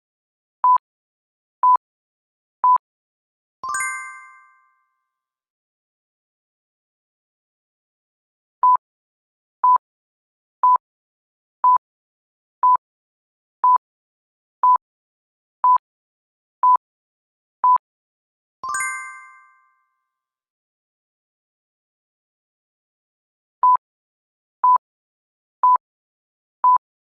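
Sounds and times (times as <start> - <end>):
bell chime: 3.6 - 5.0, 18.7 - 20.0.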